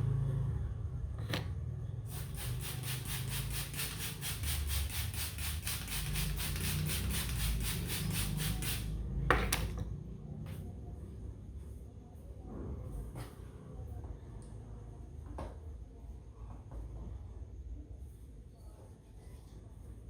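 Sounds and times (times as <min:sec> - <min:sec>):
hands rubbing hair: 0:02.1 - 0:08.8.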